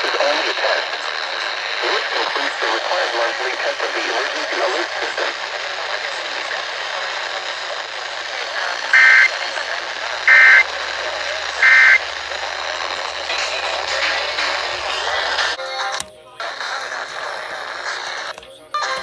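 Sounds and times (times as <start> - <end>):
radio hiss: 0.0 - 19.0
two-tone digital squawks: 10.3 - 10.7, 11.6 - 12.1.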